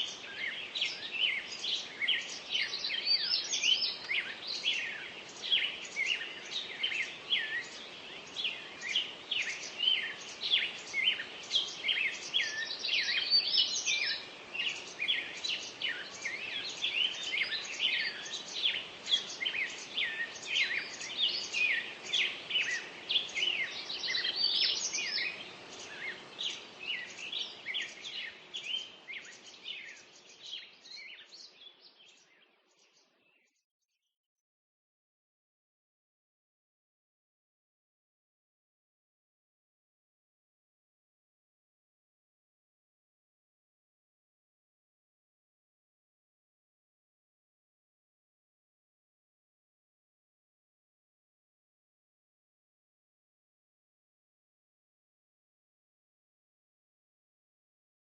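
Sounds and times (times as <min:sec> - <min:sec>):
birds chirping: 0:00.0 - 0:33.6.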